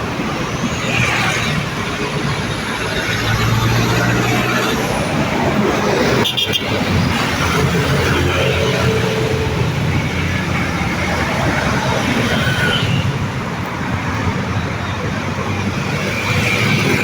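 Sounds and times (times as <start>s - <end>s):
road traffic rumble: 0.0s - 17.0s.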